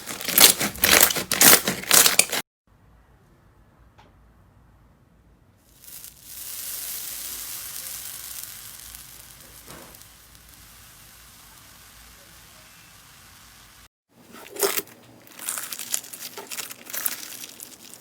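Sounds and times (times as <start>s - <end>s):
slime crackling by hand: 0.0s - 2.4s, 14.3s - 18.0s.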